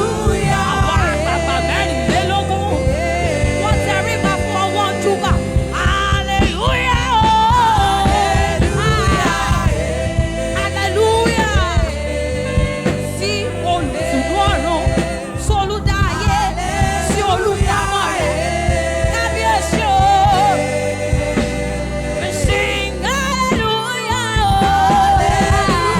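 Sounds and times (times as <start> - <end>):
gospel singing: 0.0 - 25.9
instrumental accompaniment: 0.0 - 25.9.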